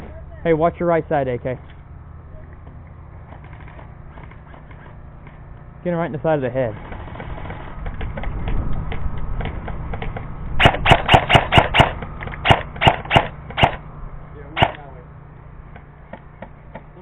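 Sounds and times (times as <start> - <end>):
airsoft gun shots: 10.6 - 13.8, 14.6 - 14.9.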